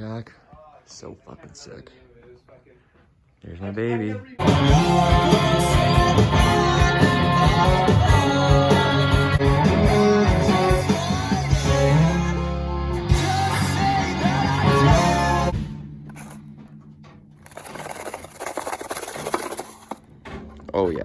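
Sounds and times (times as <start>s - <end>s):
rock song with singing: 4.4s - 15.8s.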